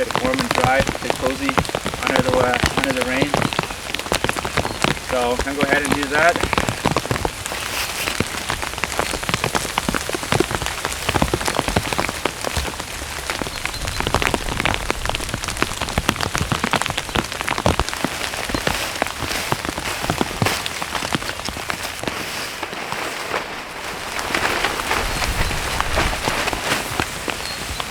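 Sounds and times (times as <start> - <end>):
drops ticking on a surface: 0.0 - 22.1
heavy rain falling: 0.0 - 27.9.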